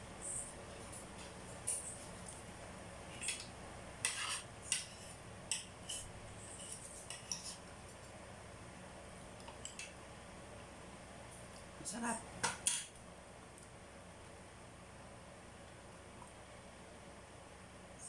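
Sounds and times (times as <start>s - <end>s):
cutlery clinking on a plate: 3.2s - 8.2s, 12.4s - 12.9s.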